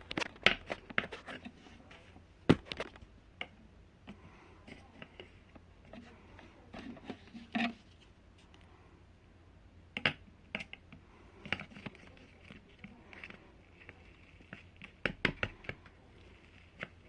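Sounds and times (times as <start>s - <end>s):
small objects clicking and tapping: 10.0s - 17.0s.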